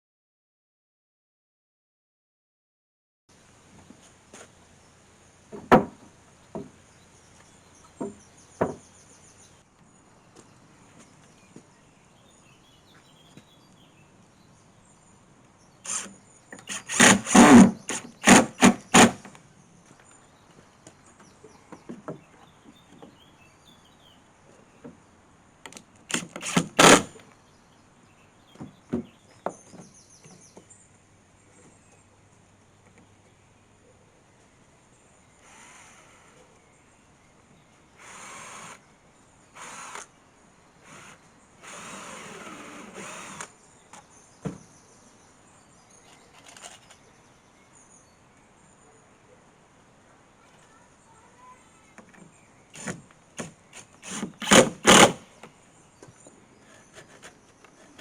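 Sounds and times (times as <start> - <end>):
wooden knocks and thuds: 5.5 - 6.8, 8.0 - 8.8.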